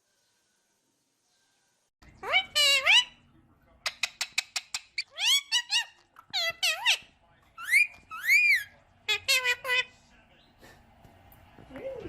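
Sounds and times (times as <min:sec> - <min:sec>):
parakeet high-pitched calls: 0:02.2 - 0:03.2, 0:03.9 - 0:09.9.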